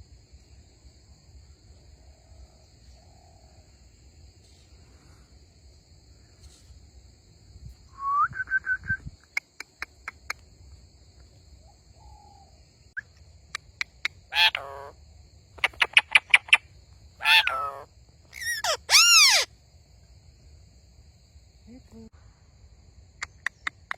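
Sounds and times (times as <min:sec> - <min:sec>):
parrot harsh screeching: 0:14.3 - 0:14.9, 0:17.2 - 0:19.5.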